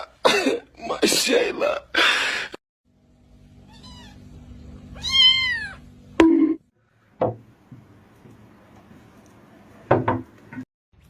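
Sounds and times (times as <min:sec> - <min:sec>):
cat meowing: 0:03.6 - 0:04.2, 0:04.9 - 0:05.8.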